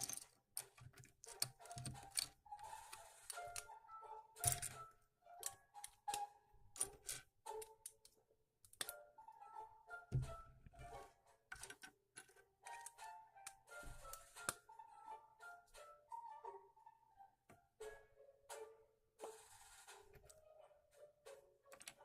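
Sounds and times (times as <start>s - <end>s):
plastic bricks clicking together: 0.0s - 3.7s, 4.4s - 4.8s, 5.4s - 9.0s, 11.5s - 14.6s, 21.7s - 22.0s
light background music: 0.0s - 22.0s.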